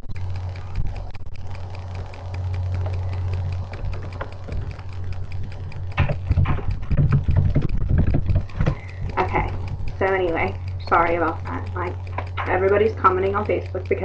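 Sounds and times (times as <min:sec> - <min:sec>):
keyboard keys clicking: 0:00.0 - 0:14.0
steady low hum: 0:00.0 - 0:14.0
bumps and knocks: 0:03.8 - 0:12.6.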